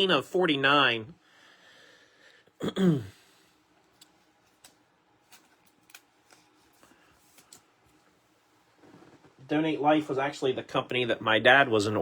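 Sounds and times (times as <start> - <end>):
faint clicks of cards handled: 3.9 - 8.1.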